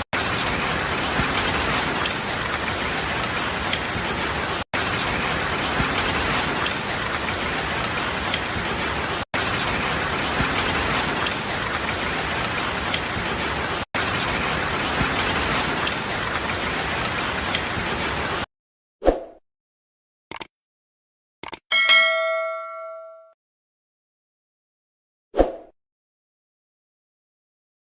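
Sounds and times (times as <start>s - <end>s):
steady rain falling: 0.0s - 18.5s.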